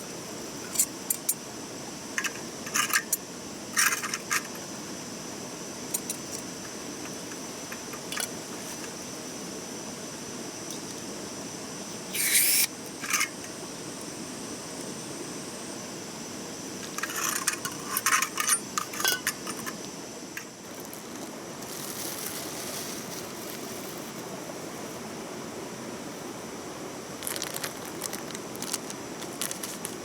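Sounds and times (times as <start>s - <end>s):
camp gear clinking and scraping: 16.8s - 19.8s.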